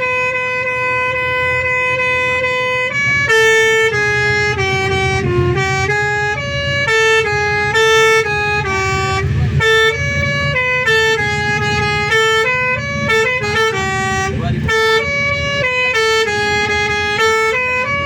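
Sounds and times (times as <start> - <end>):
low engine rumble: 0.0 - 18.0
multi-tone musical bus horn: 0.0 - 18.0.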